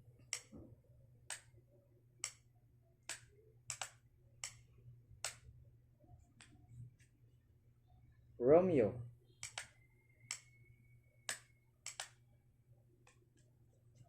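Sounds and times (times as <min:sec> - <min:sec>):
light switch clicking: 0:03.1 - 0:04.6, 0:09.4 - 0:09.7, 0:11.3 - 0:12.1.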